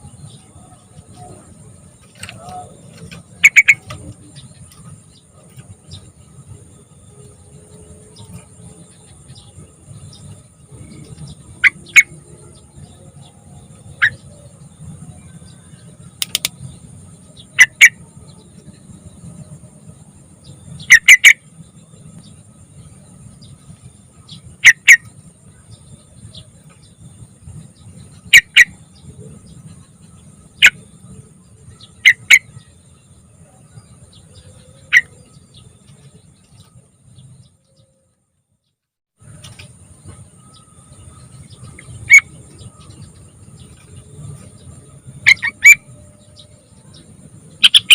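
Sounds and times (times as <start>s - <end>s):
bird sharp call notes: 2.2s - 4.2s, 20.9s - 21.4s, 45.2s - 45.9s, 47.6s - 47.9s.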